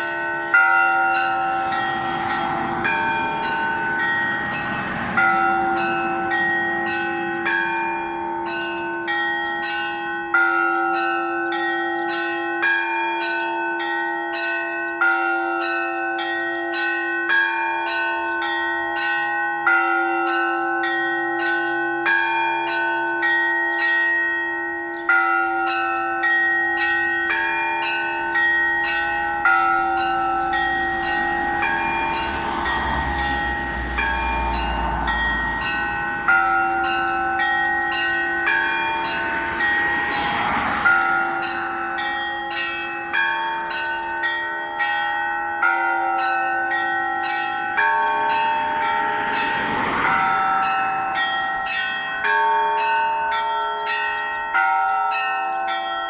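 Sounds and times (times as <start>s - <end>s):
deep bell tolling: 0.0s - 10.6s, 25.0s - 55.4s
small church bells pealing: 0.0s - 56.0s.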